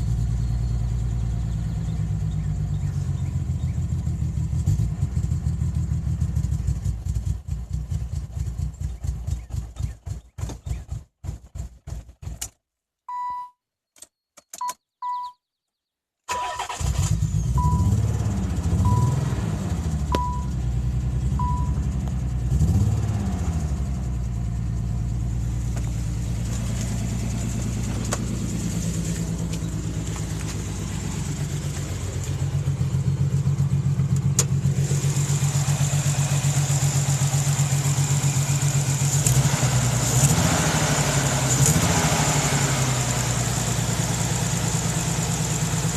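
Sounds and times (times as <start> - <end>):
car engine starting and revving: 0.0 - 12.6, 16.3 - 45.9
short electronic beeps: 13.1 - 13.6, 14.4 - 15.5, 17.5 - 18.0, 18.8 - 19.3, 20.1 - 20.6, 21.4 - 21.8.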